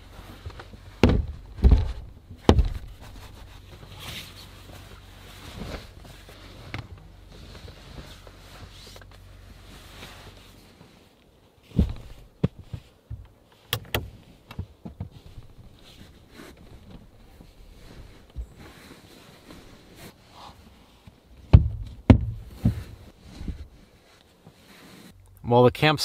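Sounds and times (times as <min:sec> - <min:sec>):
low steady hum: 0:00.0 - 0:26.0
sharp knocks and clicks: 0:21.5 - 0:22.8.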